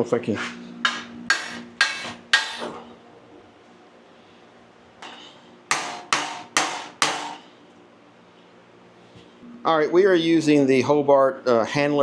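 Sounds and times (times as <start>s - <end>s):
hammer striking steel: 0.9s - 2.8s, 5.0s - 7.5s.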